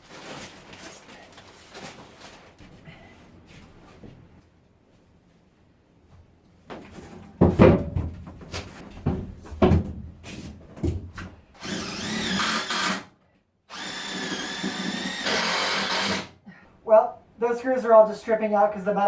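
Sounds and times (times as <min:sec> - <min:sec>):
plywood knocking and clattering: 0:06.7 - 0:11.4
power drill driving screws: 0:11.6 - 0:13.1, 0:13.7 - 0:16.4.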